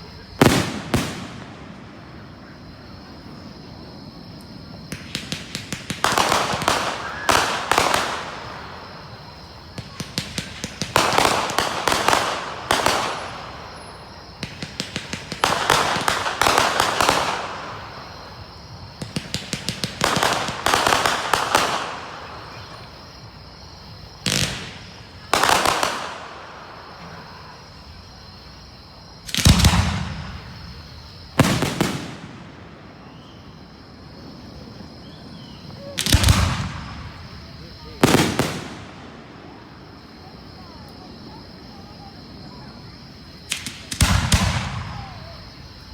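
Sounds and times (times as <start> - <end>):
fireworks crackling pops: 0.0 - 2.4, 4.3 - 23.0, 24.1 - 27.3, 29.2 - 33.4, 35.7 - 39.8, 43.4 - 45.9
deep firework booms: 0.1 - 23.0, 23.9 - 27.8, 29.2 - 40.6, 43.4 - 45.9.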